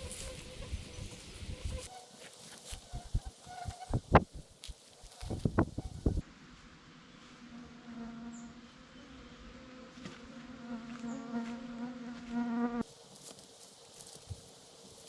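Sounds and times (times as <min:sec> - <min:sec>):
insect buzzing: 0:00.0 - 0:06.2, 0:07.6 - 0:15.0.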